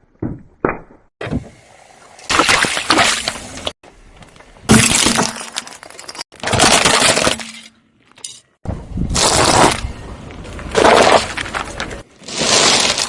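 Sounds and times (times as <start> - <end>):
glass crunching under car tyre: 9.2 - 9.8, 10.7 - 13.0.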